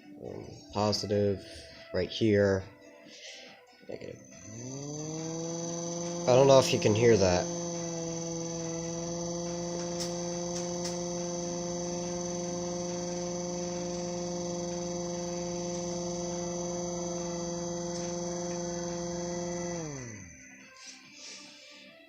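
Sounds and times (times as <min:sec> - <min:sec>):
small mechanical siren steady note: 0:04.0 - 0:21.4
faint clicks: 0:05.1 - 0:20.0.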